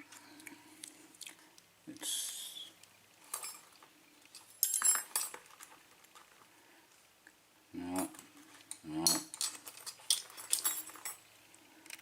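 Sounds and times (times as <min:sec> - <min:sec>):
metal tools clinking: 0:03.3 - 0:05.7, 0:08.0 - 0:11.2.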